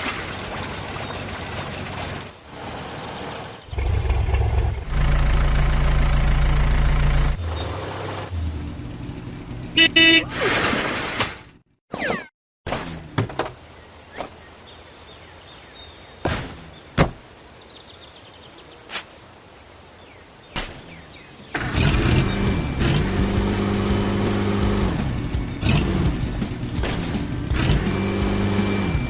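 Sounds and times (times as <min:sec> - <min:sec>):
loud steady engine-like sound: 0:00.4 - 0:10.4, 0:21.5 - 0:29.0.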